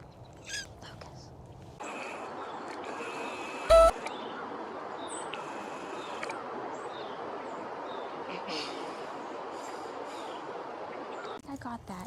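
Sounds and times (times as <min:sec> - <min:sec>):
steady rushing noise: 0:01.8 - 0:11.4
faint high bird chirps: 0:03.7 - 0:04.4.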